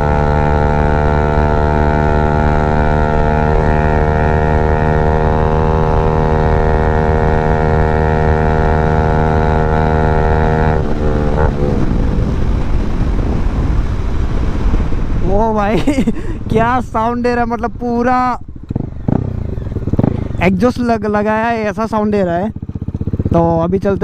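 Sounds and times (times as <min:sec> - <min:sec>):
motorcycle riding past: 0:00.0 - 0:15.1, 0:18.5 - 0:20.8, 0:22.1 - 0:23.6.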